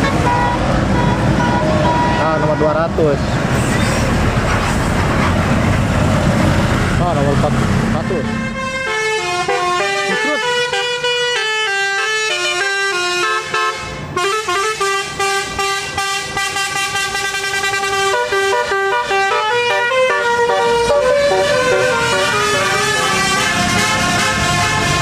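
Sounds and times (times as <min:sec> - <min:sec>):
bus horn playing a tune: 0:00.0 - 0:02.9, 0:08.2 - 0:25.0.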